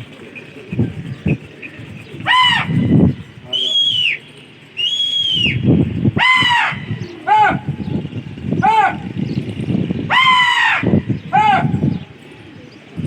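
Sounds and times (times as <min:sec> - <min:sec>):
low rumbling noise: 0:00.0 - 0:13.0
loud shrill whistles: 0:02.2 - 0:07.9, 0:10.1 - 0:11.9.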